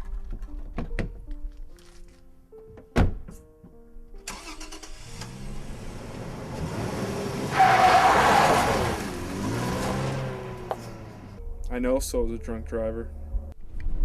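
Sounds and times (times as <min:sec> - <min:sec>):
soft background music: 0:00.0 - 0:06.6, 0:09.2 - 0:14.0
car engine starting and revving: 0:04.3 - 0:11.4.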